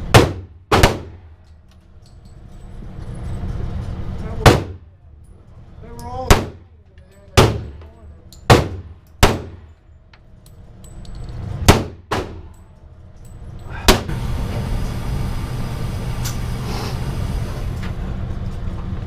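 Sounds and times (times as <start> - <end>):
pistol shots: 0.1 - 1.3, 4.4 - 4.8, 6.3 - 6.7, 7.4 - 7.8, 8.5 - 9.7, 11.6 - 12.5.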